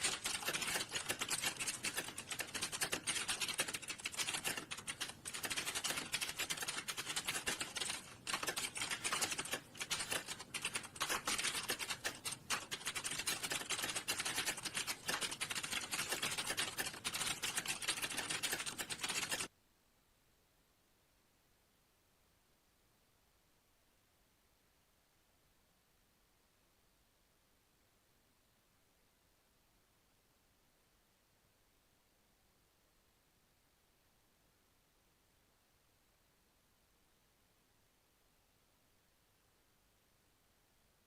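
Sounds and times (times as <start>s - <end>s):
typing on computer keyboard: 0.0s - 19.5s.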